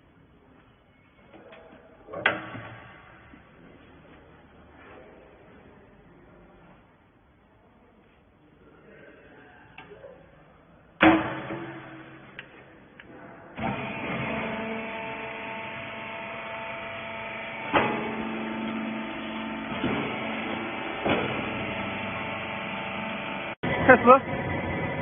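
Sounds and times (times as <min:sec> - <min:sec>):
sharp metal bang: 0:11.0 - 0:12.4
hydraulic pump motor humming: 0:13.6 - 0:25.0.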